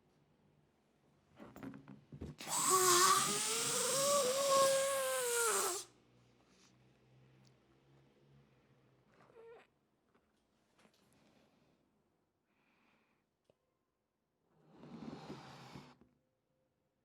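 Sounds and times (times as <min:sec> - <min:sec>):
balloon air hissing and squealing: 0:02.4 - 0:05.9.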